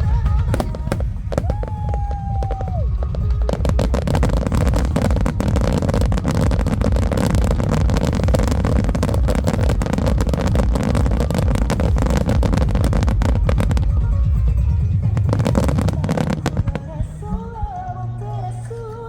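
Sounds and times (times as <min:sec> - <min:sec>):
fireworks booming: 0:00.0 - 0:17.9
fireworks crackling: 0:00.0 - 0:18.0.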